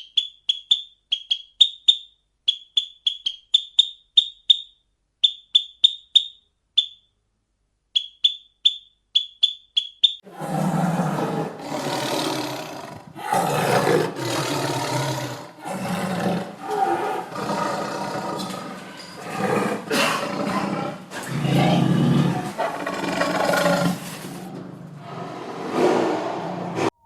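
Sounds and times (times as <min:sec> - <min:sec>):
large animal rough calls: 0:10.3 - 0:26.9.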